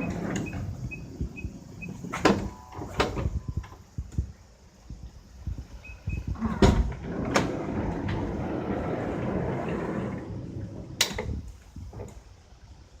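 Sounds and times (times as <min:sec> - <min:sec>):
sliding door on rail: 0:00.0 - 0:03.8, 0:06.1 - 0:12.3.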